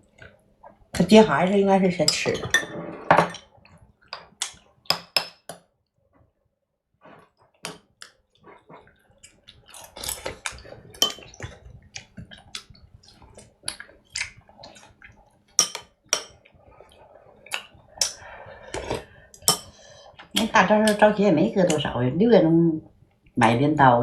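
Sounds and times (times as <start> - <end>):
dishes and utensils clinking: 2.1 - 3.5, 10.1 - 11.6, 15.6 - 16.4.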